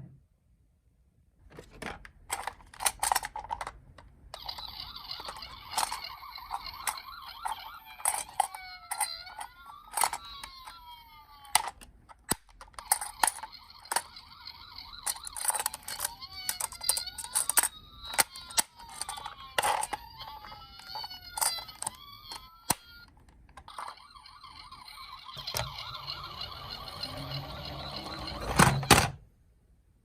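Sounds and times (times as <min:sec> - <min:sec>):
plastic toy clicks and knocks: 0:01.6 - 0:29.2
toy electronic siren: 0:04.4 - 0:11.8, 0:12.7 - 0:29.2.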